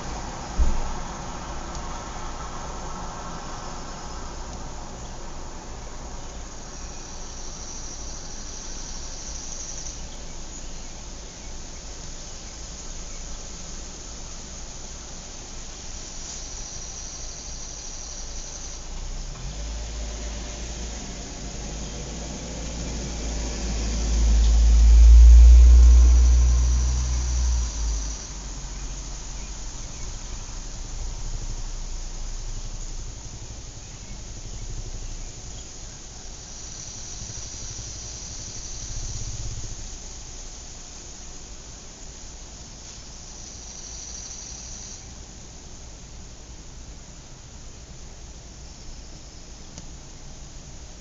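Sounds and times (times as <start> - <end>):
car driving past: 0.0 - 6.6, 18.7 - 40.7
insect trill: 0.0 - 51.0
low background rumble and hiss: 0.0 - 51.0
outdoor background noise: 0.0 - 51.0.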